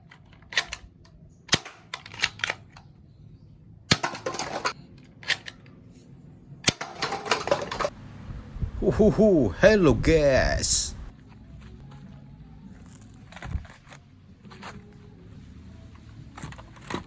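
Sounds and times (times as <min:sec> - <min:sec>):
toy guns firing: 0:01.5 - 0:02.8, 0:03.9 - 0:05.6, 0:06.7 - 0:07.9.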